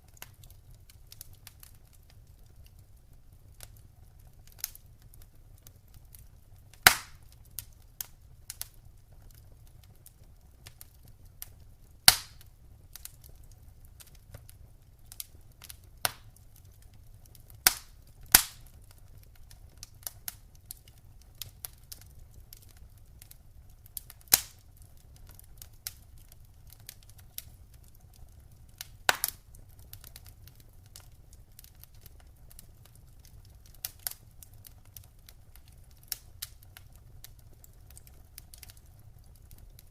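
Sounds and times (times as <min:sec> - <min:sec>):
low rumble of flames: 0:00.0 - 0:39.9
wood fire crackling: 0:00.0 - 0:39.9
loud sharp pops of fire: 0:06.7 - 0:26.0, 0:28.8 - 0:39.9.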